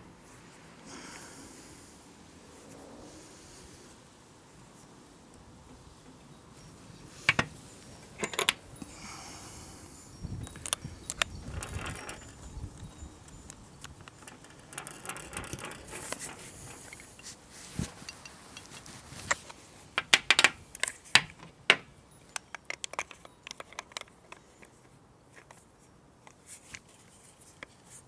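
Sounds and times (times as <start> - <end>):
metal fittings clicking and clinking: 7.2 - 8.9, 10.5 - 19.4, 20.0 - 24.4.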